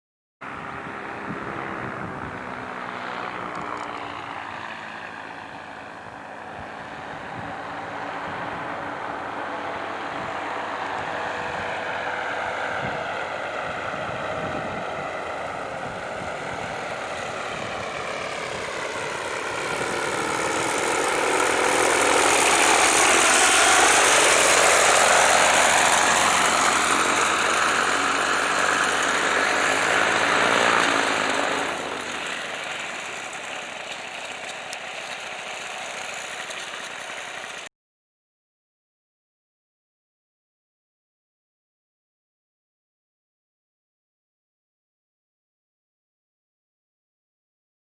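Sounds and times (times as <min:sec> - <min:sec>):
paramotor engine drone: 0:00.4 - 0:37.7.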